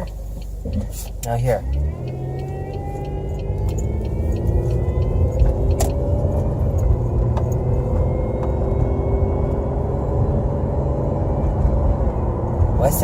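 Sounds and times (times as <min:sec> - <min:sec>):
road and engine rumble: 0:00.0 - 0:13.0
thin whine rising in pitch: 0:02.1 - 0:09.7.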